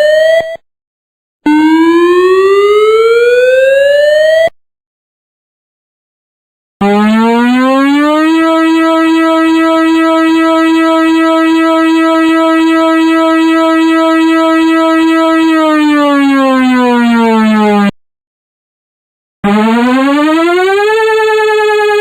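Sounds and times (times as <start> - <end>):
electronic warning siren: 0.0 - 0.6, 1.5 - 4.5, 6.8 - 18.0, 19.4 - 22.0.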